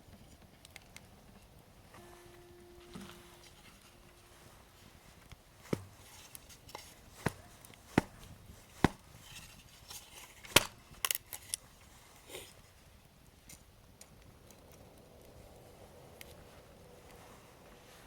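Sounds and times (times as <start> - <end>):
wood fire crackling: 2.8 - 18.0
firewood popping: 5.1 - 12.0.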